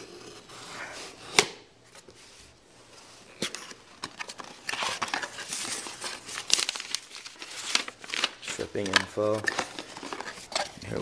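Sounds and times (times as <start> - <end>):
cardboard crinkling and tearing: 3.3 - 11.0.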